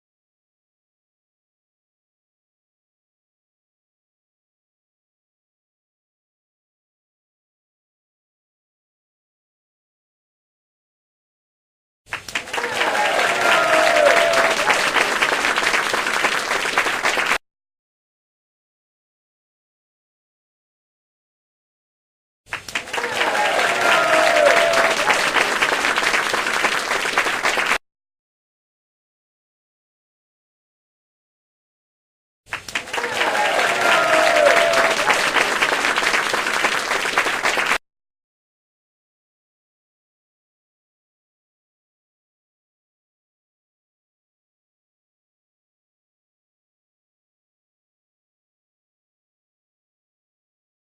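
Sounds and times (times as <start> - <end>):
crowd applauding and cheering: 12.1 - 17.4, 22.5 - 27.8, 32.5 - 37.8.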